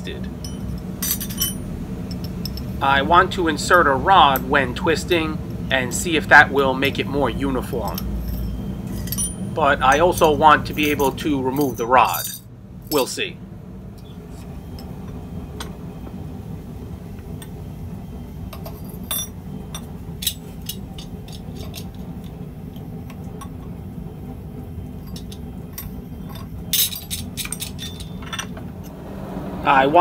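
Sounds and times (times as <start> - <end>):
steady low rumble: 0.0 - 30.0
metallic clinks of tools: 0.4 - 2.7, 7.7 - 13.2, 25.0 - 28.6.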